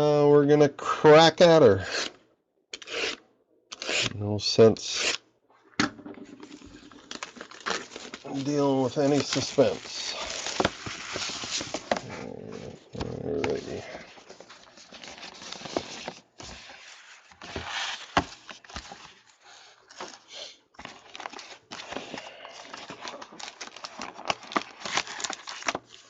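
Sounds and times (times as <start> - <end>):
packaging crinkling and rustling: 6.4 - 26.0.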